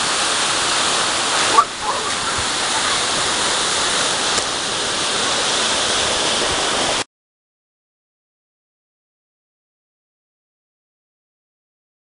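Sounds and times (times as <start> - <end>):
water rushing: 0.0 - 7.1.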